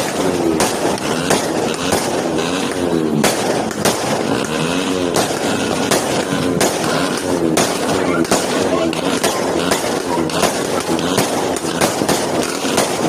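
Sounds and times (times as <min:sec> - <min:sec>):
fireworks bangs: 0:00.0 - 0:13.0
steady loud noise: 0:00.0 - 0:13.0.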